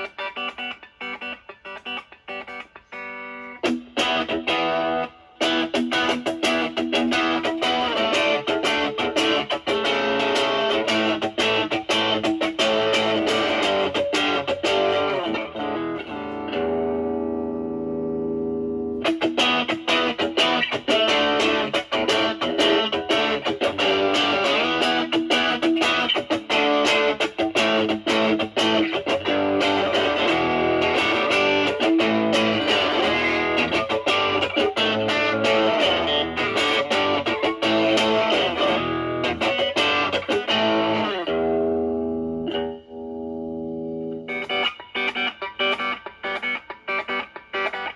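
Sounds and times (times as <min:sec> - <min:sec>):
distorted electric guitar lead: 0:00.0 - 0:47.9.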